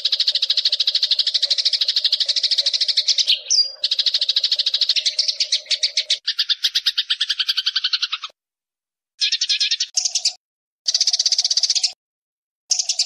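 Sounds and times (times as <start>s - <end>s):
sparrows chirping: 0.0s - 8.4s, 9.2s - 12.0s, 12.7s - 13.0s.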